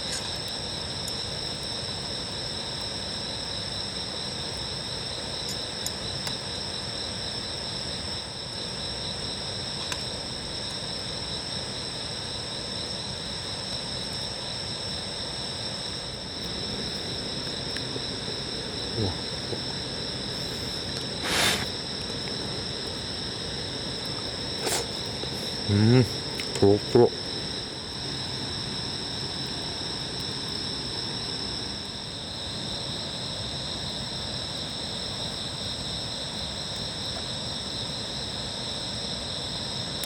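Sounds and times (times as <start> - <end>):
crickets and insects trilling: 0.0 - 40.0
brief rush of noise: 21.2 - 21.7.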